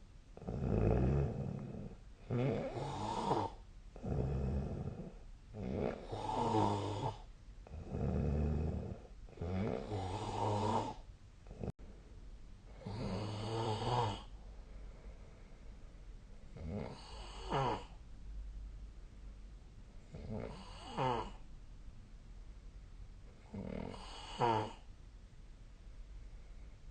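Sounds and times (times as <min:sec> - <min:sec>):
person snoring: 0:00.4 - 0:11.7, 0:12.8 - 0:14.3, 0:16.6 - 0:18.0, 0:20.1 - 0:21.4, 0:23.5 - 0:24.8.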